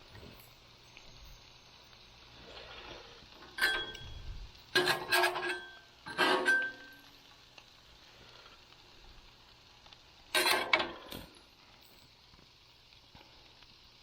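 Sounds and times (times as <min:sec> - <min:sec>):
metal spatula scraping griddle: 0:02.4 - 0:07.1, 0:10.4 - 0:11.2.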